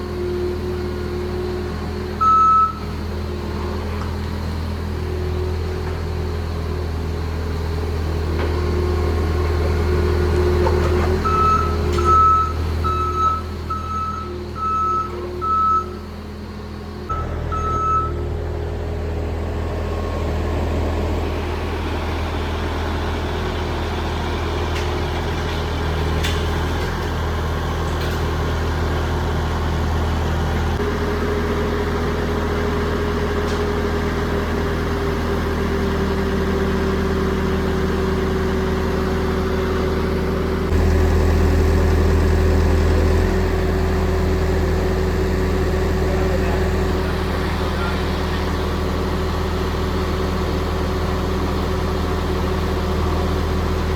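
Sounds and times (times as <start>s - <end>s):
vehicle engine rumbling: 0.0s - 53.9s.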